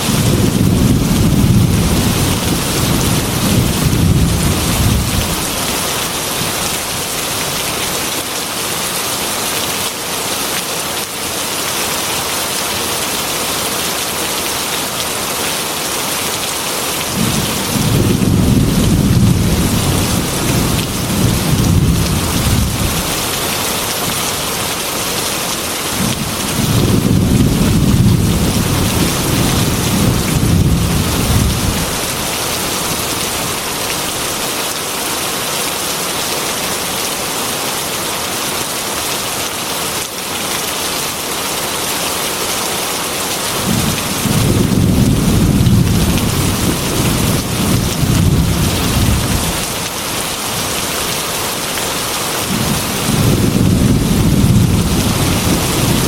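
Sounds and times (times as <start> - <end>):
thunder rumbling: 0.0 - 5.7, 17.1 - 23.6, 25.9 - 33.5, 43.6 - 49.8, 52.4 - 56.0
heavy rain on a window: 0.0 - 56.0.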